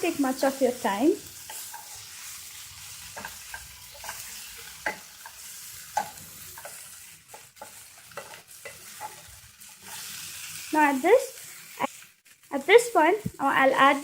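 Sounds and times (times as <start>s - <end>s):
masala sizzling in a pan: 0.0s - 14.0s
utensil scraping the pan: 1.2s - 12.4s.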